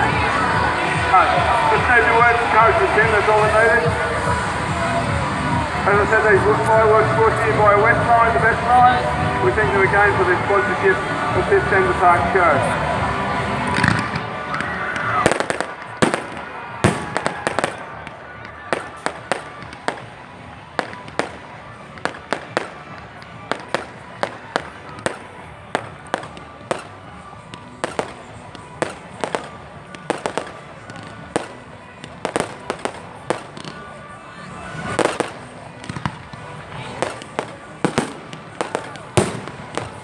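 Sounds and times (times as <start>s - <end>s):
fireworks crackling: 13.5s - 33.9s, 34.7s - 40.0s
fireworks bangs: 15.0s - 33.8s, 34.8s - 40.0s.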